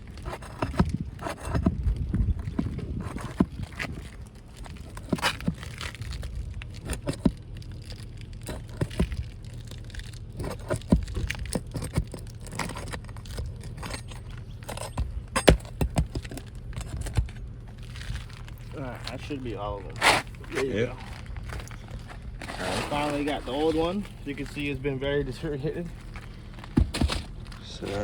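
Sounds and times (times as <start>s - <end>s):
pry bar scraping and knocking: 0.0s - 6.2s, 6.8s - 7.4s, 8.4s - 9.3s, 10.3s - 19.2s, 19.9s - 20.6s, 21.2s - 28.0s
shingle being pried free: 0.0s - 19.2s, 19.8s - 28.0s
low rumble: 0.0s - 28.0s.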